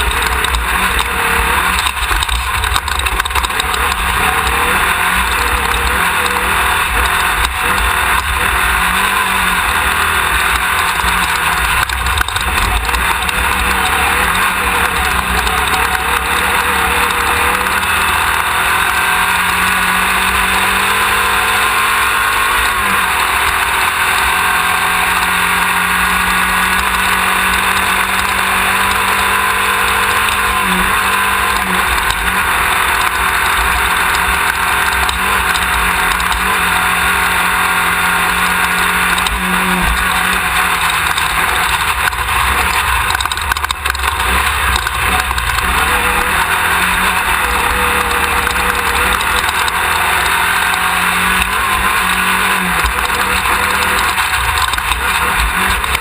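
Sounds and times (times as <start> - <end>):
race car engine running hard: 0.0 - 56.0
wind and driving noise: 0.0 - 56.0.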